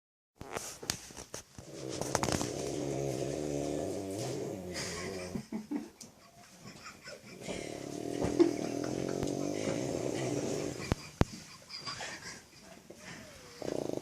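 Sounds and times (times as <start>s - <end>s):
woman snoring: 1.7s - 5.4s, 7.4s - 11.0s, 13.1s - 14.0s.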